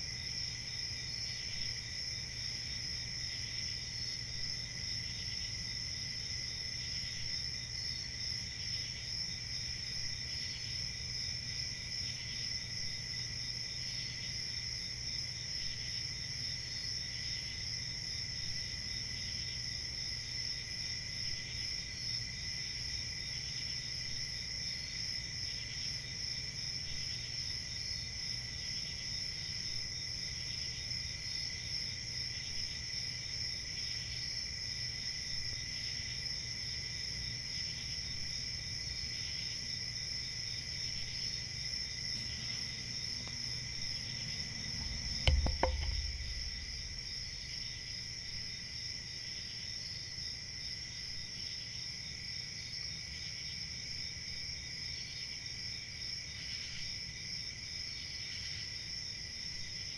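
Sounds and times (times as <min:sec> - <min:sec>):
crickets chirping in pulses: 0:00.0 - 0:59.9
crickets trilling: 0:00.0 - 0:59.9
low steady hum: 0:41.2 - 0:49.0.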